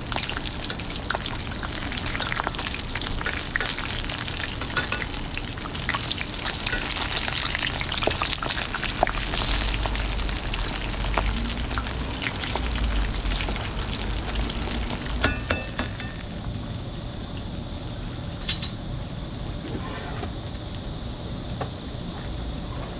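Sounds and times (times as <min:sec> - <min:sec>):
food sizzling in a pan: 0:00.0 - 0:16.5.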